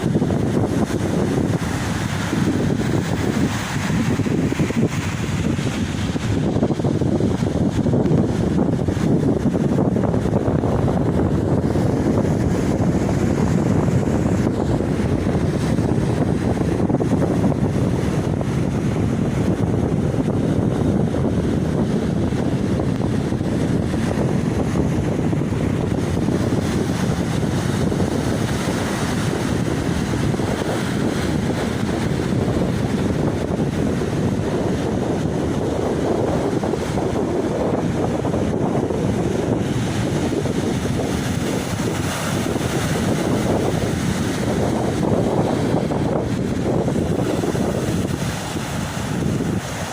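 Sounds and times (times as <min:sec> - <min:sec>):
sea surf breaking on beach: 0:00.0 - 0:49.9
wind buffeting microphone: 0:00.0 - 0:49.9.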